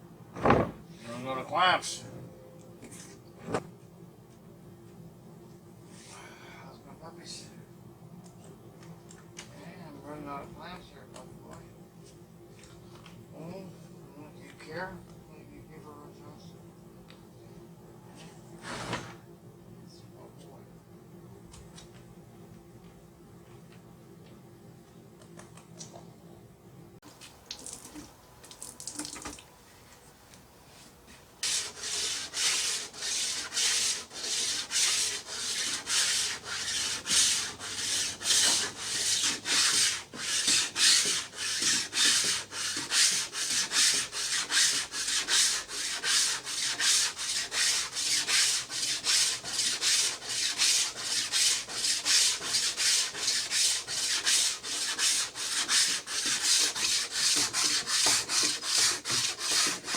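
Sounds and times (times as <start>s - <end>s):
hand sanding wood: 30.8s - 59.9s.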